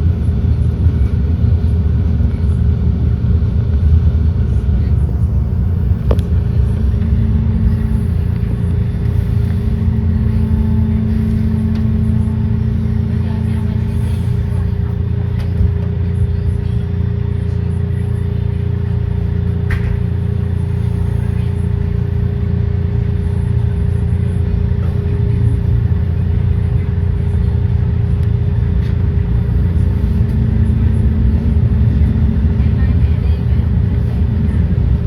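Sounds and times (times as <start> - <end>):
trolley wheels rumbling: 2.3 - 35.0
motor hum: 4.5 - 16.5, 28.2 - 35.0.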